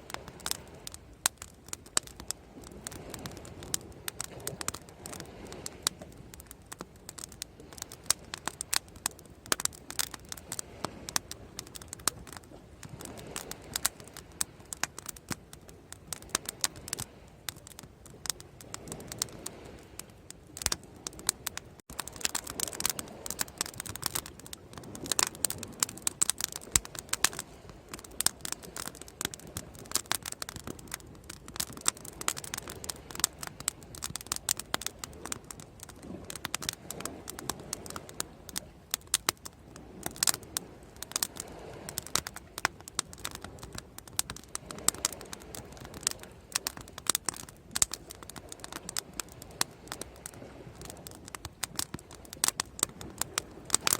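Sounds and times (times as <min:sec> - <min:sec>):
bonfire crackling: 0:00.0 - 0:53.9.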